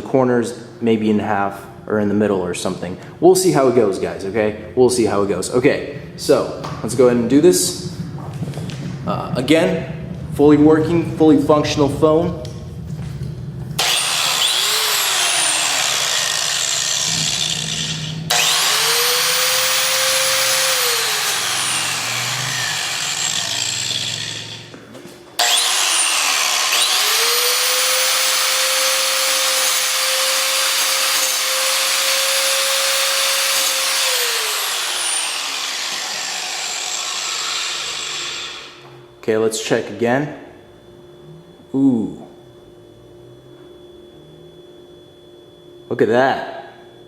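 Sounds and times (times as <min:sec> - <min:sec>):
angle grinder grinding metal: 0:13.8 - 0:24.8, 0:25.4 - 0:38.8.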